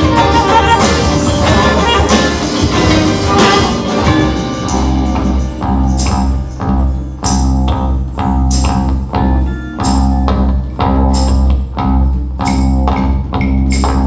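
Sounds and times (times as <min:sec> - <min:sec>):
drum and cymbal hits: 0:00.0 - 0:07.8
live band playing: 0:00.0 - 0:10.4
held bass notes: 0:00.0 - 0:14.0.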